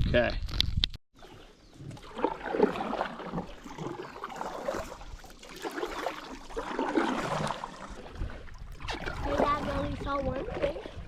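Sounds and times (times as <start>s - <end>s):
river water gurgling and splashing: 1.2s - 11.0s.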